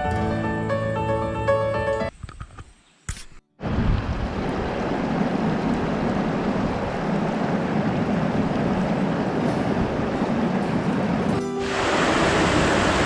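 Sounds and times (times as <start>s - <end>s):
waterfall rushing: 3.6s - 13.0s.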